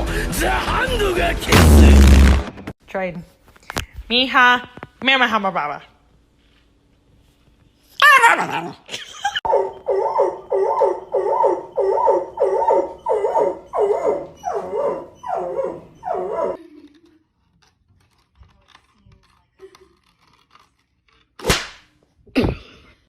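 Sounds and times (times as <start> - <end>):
dog barking: 9.4 - 16.6
dog high cry: 9.4 - 16.6.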